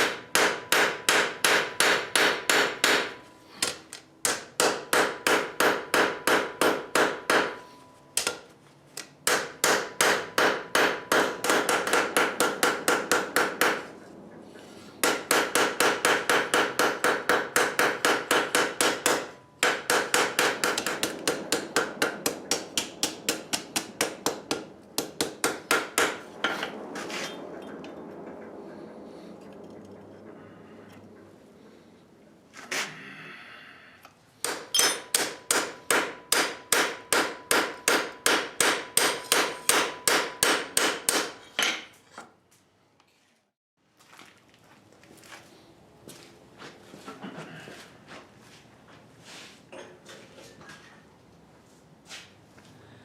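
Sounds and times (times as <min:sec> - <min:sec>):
hammer striking steel on anvil: 0:00.0 - 0:13.9, 0:15.0 - 0:26.8, 0:34.4 - 0:42.0.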